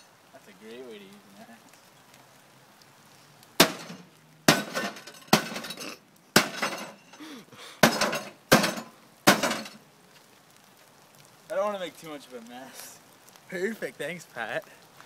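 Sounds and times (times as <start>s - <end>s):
broken glass and parts rattling: 3.6s - 7.2s, 7.8s - 9.8s.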